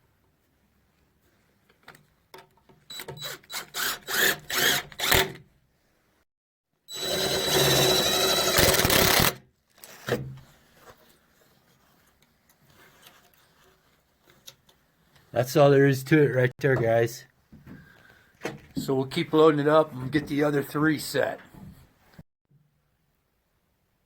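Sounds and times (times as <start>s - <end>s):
power drill boring into wood: 2.9s - 5.4s, 6.9s - 9.4s.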